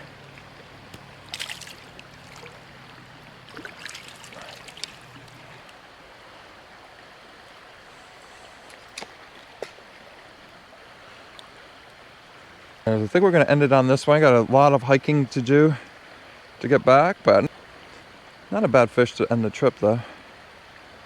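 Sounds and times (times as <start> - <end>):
water splashes: 0.0 - 6.4, 7.1 - 14.7
creek water rushing: 0.0 - 21.0.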